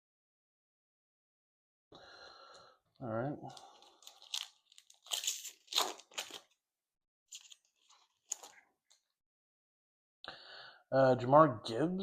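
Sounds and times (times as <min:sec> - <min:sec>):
foil wrapper crinkling: 0:03.6 - 0:06.6, 0:07.3 - 0:08.6.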